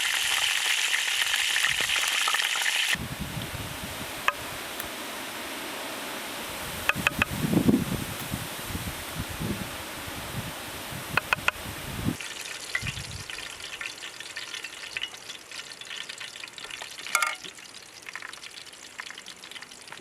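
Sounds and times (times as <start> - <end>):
food frying and crackling in pan: 0.0 - 5.4, 6.4 - 9.6, 10.7 - 20.0
steady outdoor hiss: 0.0 - 20.0
metal utensil clinking on pan: 17.0 - 17.5.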